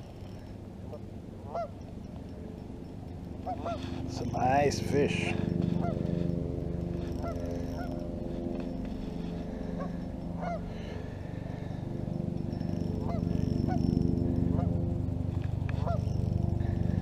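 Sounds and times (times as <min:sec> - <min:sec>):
steady low hum: 0:00.0 - 0:17.0
honking bird calls: 0:09.6 - 0:10.8, 0:15.7 - 0:16.9.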